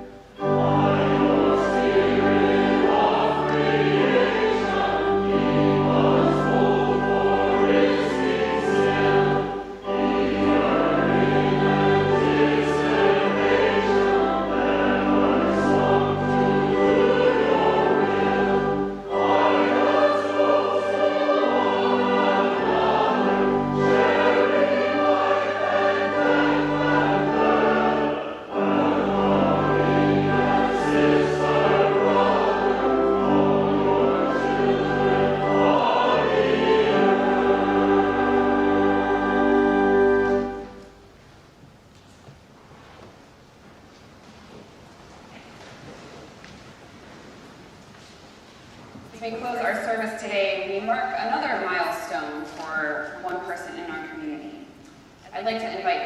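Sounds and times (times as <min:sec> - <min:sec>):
sustained instrumental accompaniment: 0:00.0 - 0:41.2
group of voices singing: 0:00.4 - 0:40.6.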